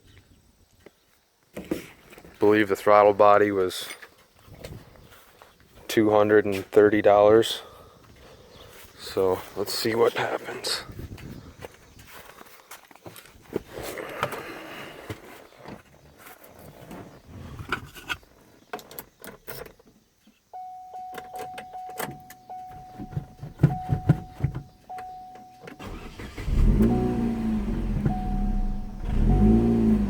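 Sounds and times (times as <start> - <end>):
car engine starting and idling: 21.7 - 30.0.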